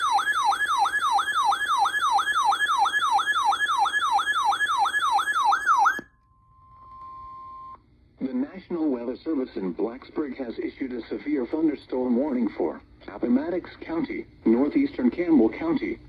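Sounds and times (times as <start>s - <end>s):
siren alarm wail: 0.0s - 7.6s
steady alarm tone: 0.0s - 7.8s.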